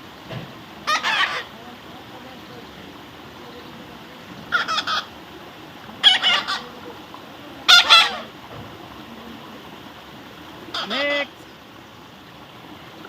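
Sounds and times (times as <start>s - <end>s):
parrot squawking: 0.8s - 1.6s, 4.5s - 5.1s, 6.0s - 6.8s, 7.6s - 8.3s, 10.7s - 11.4s.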